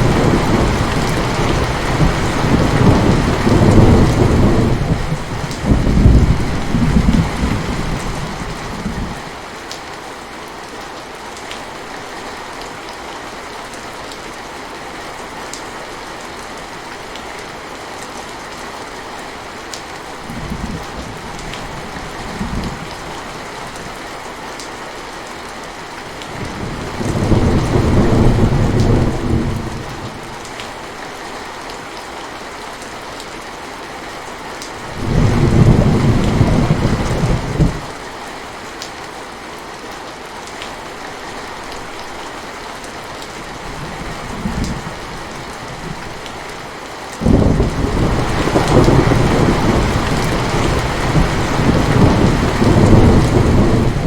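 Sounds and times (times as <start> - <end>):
thunder rumbling: 0.0 - 9.2, 26.3 - 30.3, 34.9 - 37.9, 47.2 - 54.0
steady rain falling: 0.0 - 54.0.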